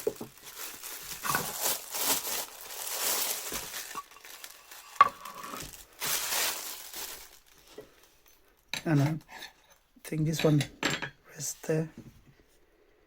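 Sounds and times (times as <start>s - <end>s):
packing material crinkling: 0.0s - 8.2s.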